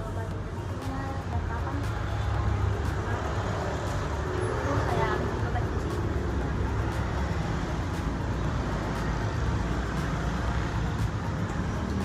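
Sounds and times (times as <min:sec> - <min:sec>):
low rumbling background noise: 0:00.0 - 0:12.0.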